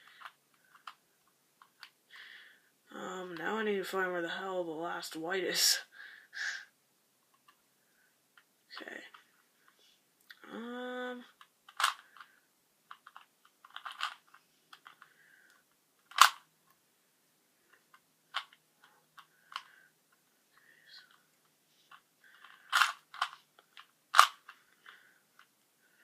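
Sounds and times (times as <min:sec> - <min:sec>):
puzzle cube clicking: 0:00.0 - 0:01.0, 0:11.2 - 0:16.5, 0:17.7 - 0:19.9, 0:21.9 - 0:25.5.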